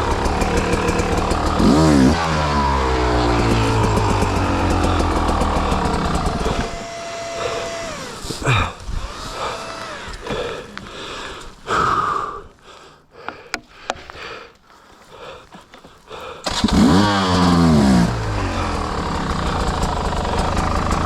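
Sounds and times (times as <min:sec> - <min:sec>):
dirt bike engine revving: 0:00.0 - 0:11.0, 0:16.4 - 0:21.0.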